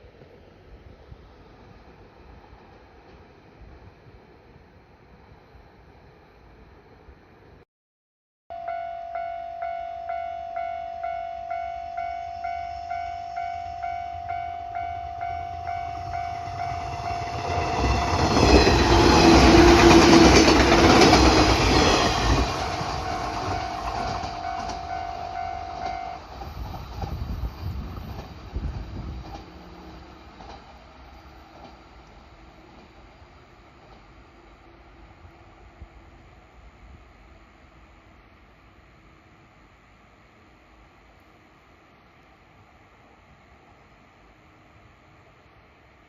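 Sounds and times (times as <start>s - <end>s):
level crossing warning bell ringing: 8.5s - 18.5s, 21.8s - 26.4s
train wheels clacking over rails: 17.0s - 33.1s.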